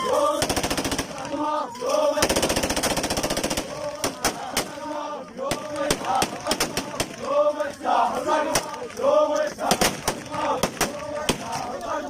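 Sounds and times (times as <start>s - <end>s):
men chanting: 0.0s - 12.0s
gunshots: 0.2s - 1.5s, 2.2s - 4.9s, 5.5s - 7.3s, 9.6s - 11.7s.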